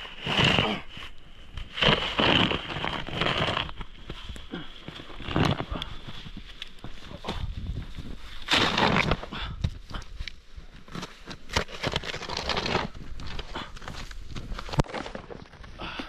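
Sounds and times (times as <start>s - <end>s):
footsteps crunching through snow: 0.3s - 9.3s.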